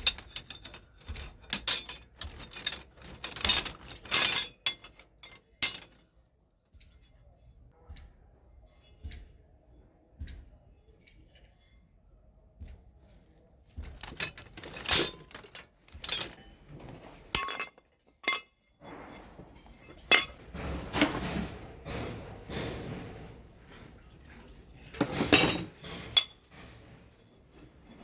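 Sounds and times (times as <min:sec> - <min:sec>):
metal pieces clinking and clanking: 0:00.0 - 0:06.1, 0:13.8 - 0:22.6, 0:24.9 - 0:28.0.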